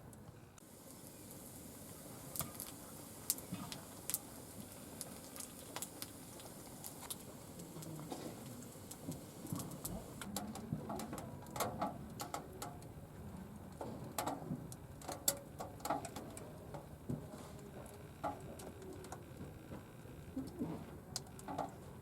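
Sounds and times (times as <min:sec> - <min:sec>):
wood crackling in a stove: 0:00.0 - 0:22.0.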